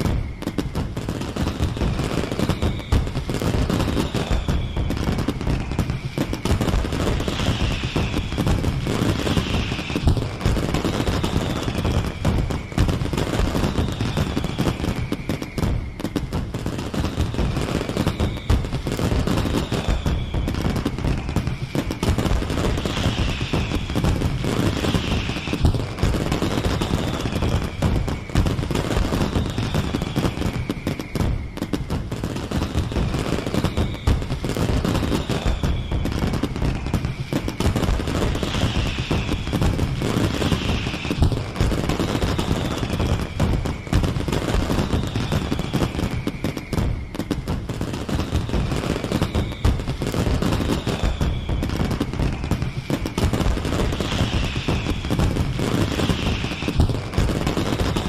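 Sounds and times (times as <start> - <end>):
fireworks crackling and banging: 0.0 - 58.0
fireworks falling whistles: 0.0 - 58.0.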